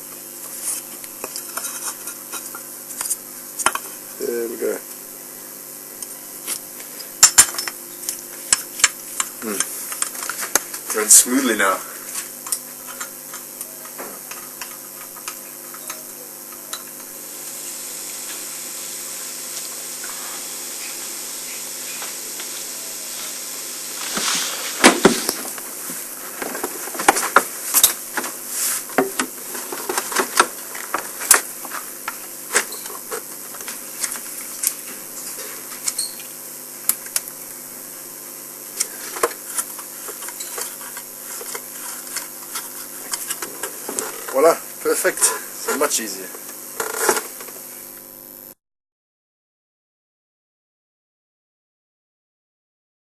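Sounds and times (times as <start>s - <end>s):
soft hiss: 17.5s - 25.8s.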